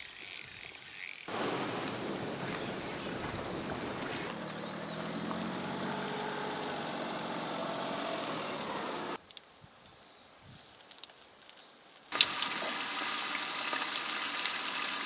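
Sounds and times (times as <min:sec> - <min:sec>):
engine running: 0:01.3 - 0:09.2.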